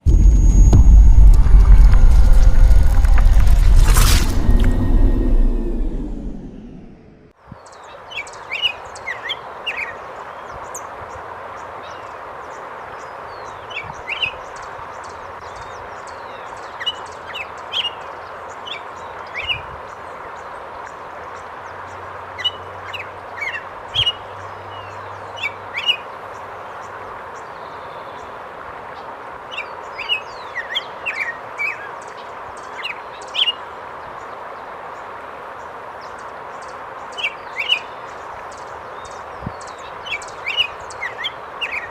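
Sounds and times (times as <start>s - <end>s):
small birds chirping: 36.0s - 41.9s.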